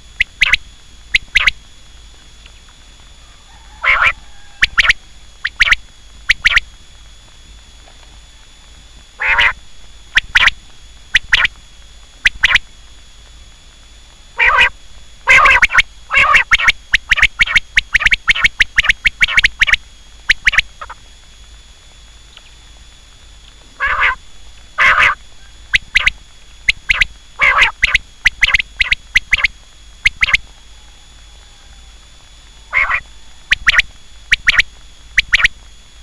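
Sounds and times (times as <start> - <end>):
quail calling: 0.0 - 1.6, 3.2 - 6.7, 9.2 - 11.5, 12.3 - 12.7, 14.4 - 21.0, 23.8 - 24.2, 24.8 - 32.0, 32.6 - 35.5.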